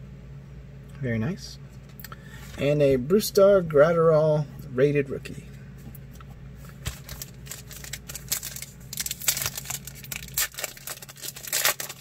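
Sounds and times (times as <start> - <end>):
foil pack crinkling: 6.6 - 12.0.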